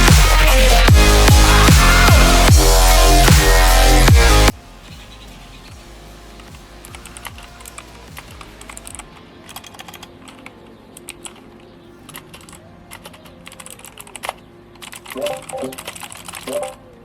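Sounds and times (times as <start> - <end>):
faint music: 3.8 - 17.0.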